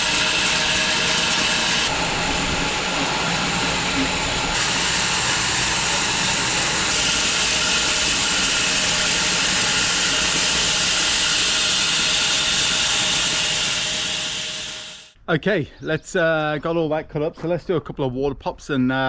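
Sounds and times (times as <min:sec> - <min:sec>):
machine droning: 0:00.0 - 0:15.1
saw blade hissing through log: 0:04.5 - 0:15.1.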